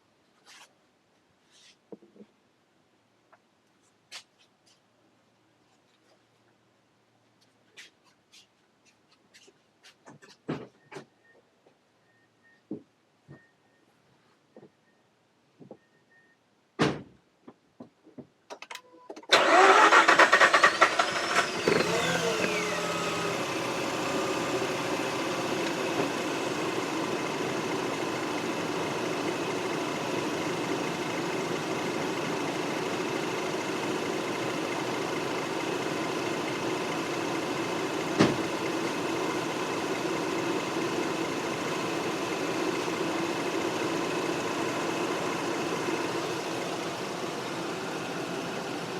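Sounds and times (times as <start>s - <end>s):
rotary engine cranking and idling: 19.3s - 48.9s.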